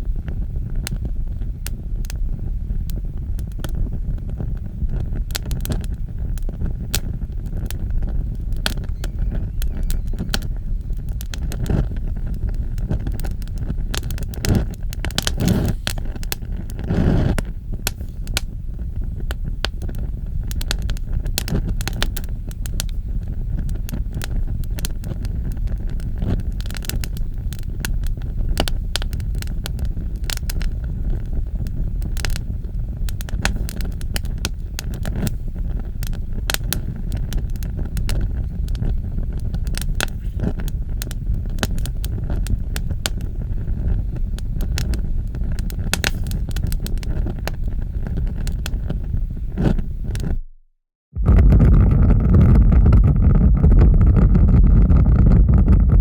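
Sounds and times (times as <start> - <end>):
fire crackling and popping: 0.0 - 50.4, 51.2 - 56.0
fire roaring: 0.0 - 50.4, 51.2 - 56.0.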